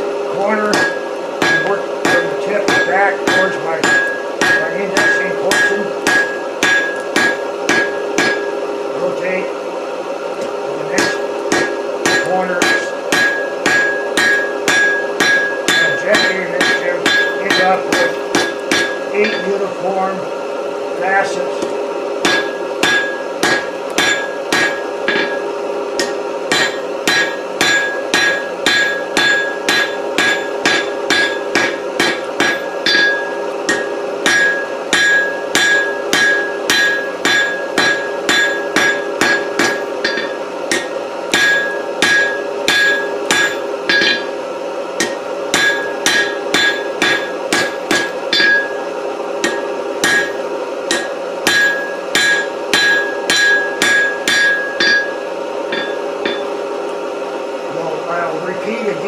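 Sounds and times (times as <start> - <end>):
hammer striking steel on anvil: 0.4 - 8.6, 10.4 - 19.7, 21.2 - 44.4, 45.0 - 56.6
anvil ringing: 0.5 - 8.6, 10.8 - 19.7, 21.2 - 44.4, 45.0 - 56.6.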